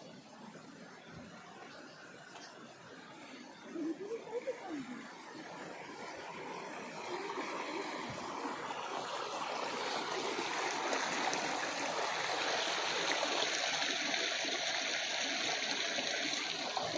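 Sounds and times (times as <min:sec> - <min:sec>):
stream water rushing: 0:00.0 - 0:16.9.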